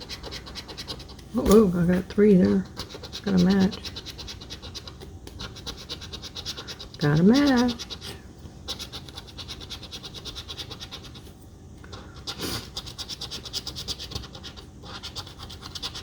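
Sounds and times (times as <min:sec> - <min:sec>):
lottery ticket being scratched: 0:00.0 - 0:08.1.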